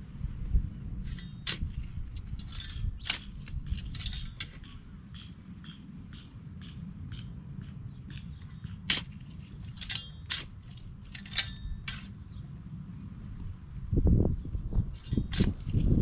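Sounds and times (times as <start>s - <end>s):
wind rumble on microphone: 0.0s - 16.0s
garden fork tines striking stones: 1.0s - 7.3s, 8.0s - 12.4s, 15.0s - 16.0s.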